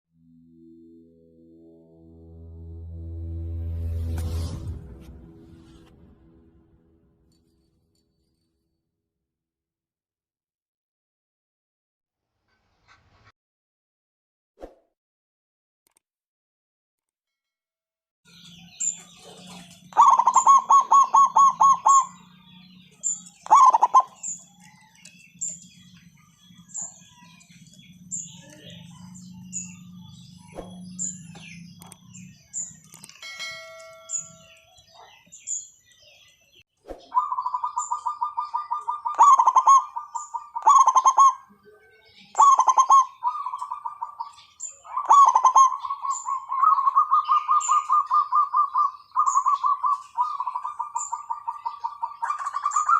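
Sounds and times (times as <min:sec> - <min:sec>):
small bird chirps: 0:18.3 - 0:33.2, 0:33.9 - 0:52.9
dove trilled cooing: 0:19.2 - 0:22.3, 0:23.4 - 0:24.4, 0:37.1 - 0:41.6, 0:42.3 - 0:52.9.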